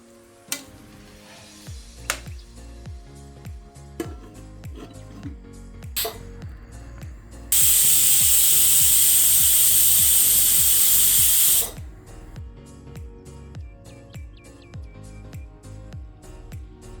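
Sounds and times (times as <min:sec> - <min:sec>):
pressure cooker steam hiss: 0:04.0 - 0:05.4, 0:06.0 - 0:12.3.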